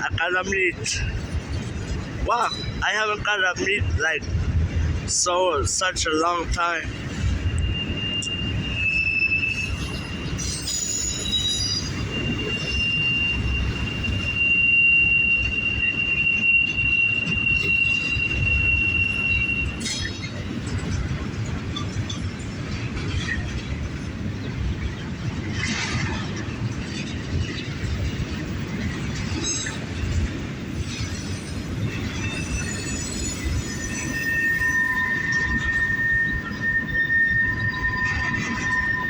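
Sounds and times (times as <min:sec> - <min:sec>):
freight train rumbling past: 0:00.0 - 0:39.0
train wheels squealing: 0:00.6 - 0:04.0, 0:05.1 - 0:39.0.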